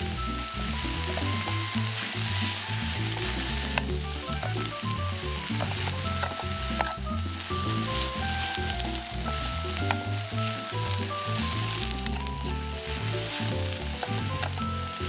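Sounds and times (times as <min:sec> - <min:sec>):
food sizzling in a pan: 0:00.0 - 0:15.0
instrumental background music: 0:00.0 - 0:15.0
sharp clicks: 0:03.2 - 0:15.0.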